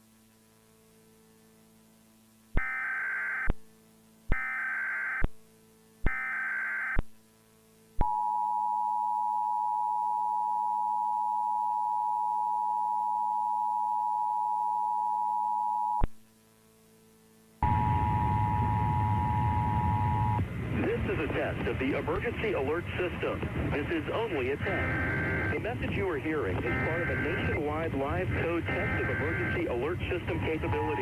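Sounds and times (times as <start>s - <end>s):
two-tone attention signal: 17.6s - 20.4s, 24.6s - 25.6s, 26.6s - 27.6s, 28.2s - 31.0s
warbling data tone bursts: 17.6s - 20.4s, 24.6s - 25.7s, 26.6s - 31.0s.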